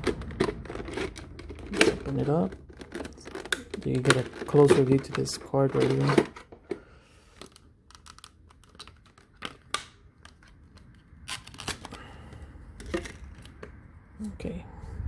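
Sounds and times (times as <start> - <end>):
plastic packaging crinkling: 0.0 - 6.5, 7.3 - 12.0.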